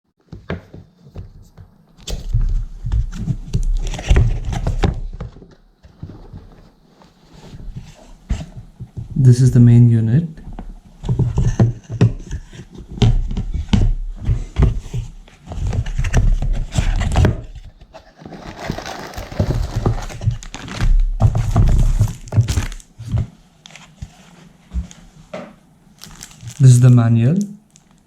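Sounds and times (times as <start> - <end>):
plastic parts knocking and tapping: 10.4 - 23.3
rustling: 10.5 - 28.0.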